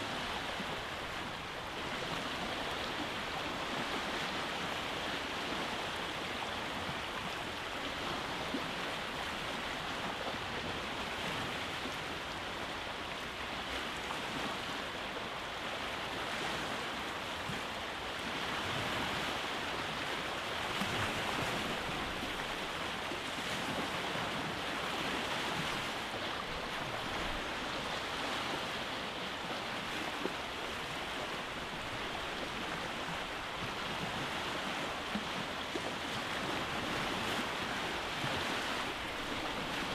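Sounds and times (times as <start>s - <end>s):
sea waves on rocky shore: 0.0s - 39.9s.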